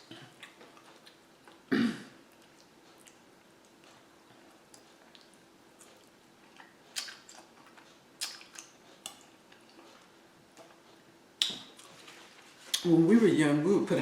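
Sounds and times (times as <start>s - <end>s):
faint steady hum: 0.0s - 14.0s
wet chewing mouth clicks: 4.6s - 10.8s.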